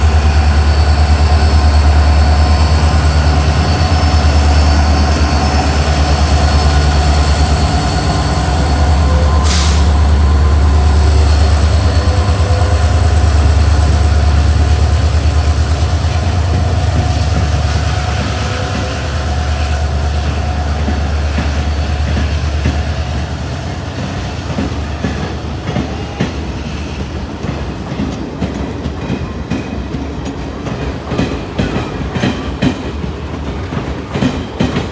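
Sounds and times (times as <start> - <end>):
diesel locomotive engine hum: 0.0 - 27.7
train wheels clicking over rail joints: 0.0 - 34.9.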